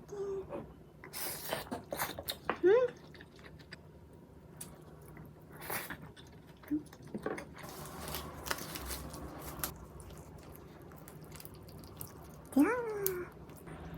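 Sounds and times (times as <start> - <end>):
eating clicks and squishes: 6.0 - 13.7.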